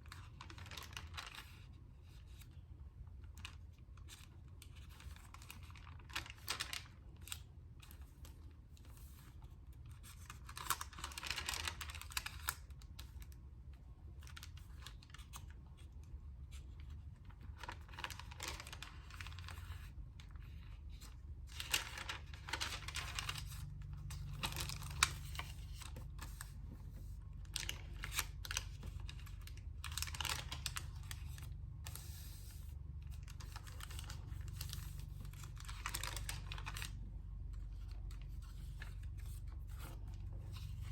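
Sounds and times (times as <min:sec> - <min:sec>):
paper pages rustling: 0:00.0 - 0:13.4, 0:14.1 - 0:40.9.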